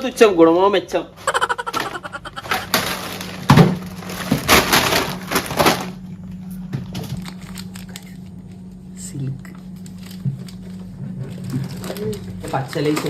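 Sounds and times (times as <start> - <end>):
snack wrappers rustling: 1.3 - 6.0, 7.0 - 8.8, 9.7 - 13.0.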